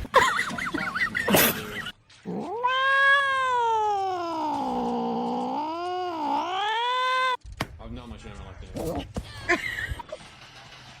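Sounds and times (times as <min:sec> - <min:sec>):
cat yowling: 0:02.3 - 0:07.4.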